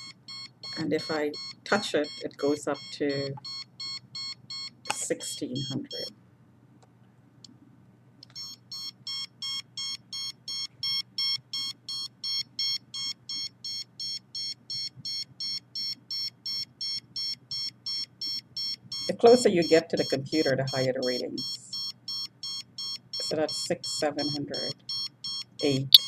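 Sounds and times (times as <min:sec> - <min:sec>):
detector beeping rapidly: 0:00.0 - 0:05.0, 0:24.2 - 0:26.0.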